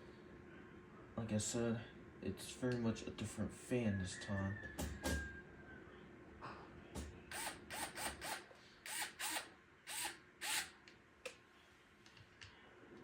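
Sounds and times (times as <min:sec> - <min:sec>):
electric screwdriver whirring: 0:07.3 - 0:10.8.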